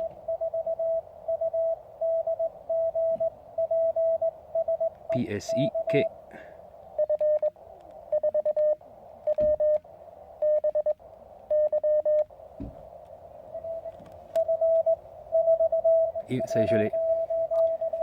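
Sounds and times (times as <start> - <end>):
morse code tones: 0.0 - 6.2, 7.0 - 9.8, 10.4 - 12.3, 13.5 - 18.0
receiver hiss: 0.0 - 18.0.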